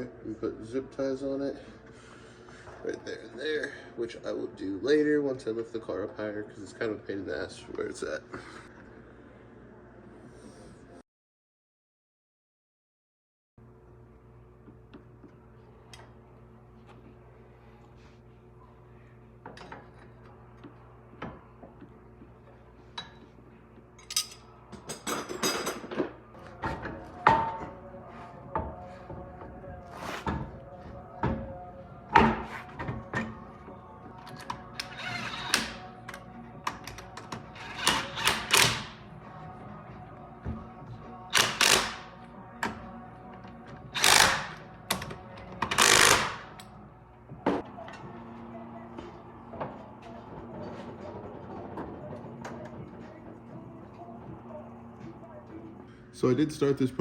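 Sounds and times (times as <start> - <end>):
metal tools clanking: 24.0 - 26.0.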